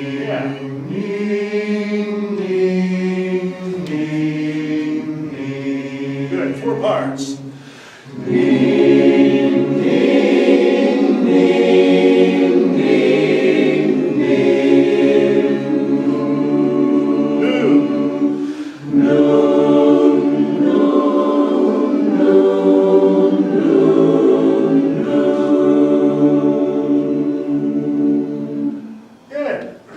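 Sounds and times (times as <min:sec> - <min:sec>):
barbershop chorus singing: 0:00.0 - 0:29.2.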